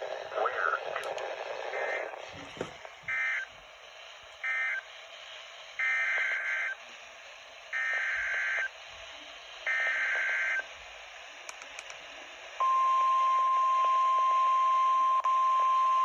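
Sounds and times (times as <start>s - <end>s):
radio hiss: 0.0s - 12.6s.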